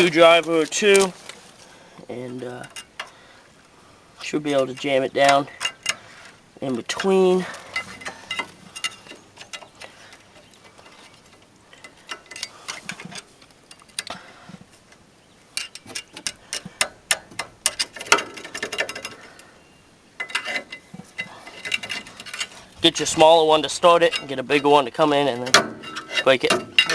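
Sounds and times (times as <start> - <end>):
screwdrivers clinking on metal: 15.6 - 19.3, 20.2 - 23.0, 23.7 - 26.9.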